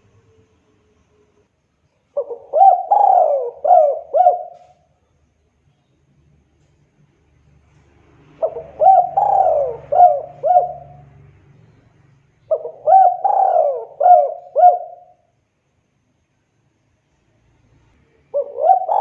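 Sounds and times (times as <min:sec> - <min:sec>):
dove cooing: 0:02.1 - 0:04.8, 0:08.4 - 0:11.2, 0:12.5 - 0:15.2, 0:18.3 - 0:19.0.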